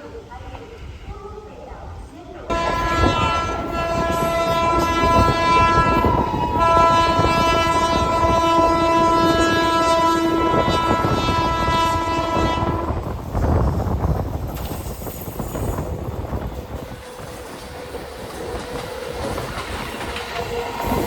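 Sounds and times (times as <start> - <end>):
train rumble: 0.0 - 21.0
train horn multi-tone blast: 2.5 - 13.1.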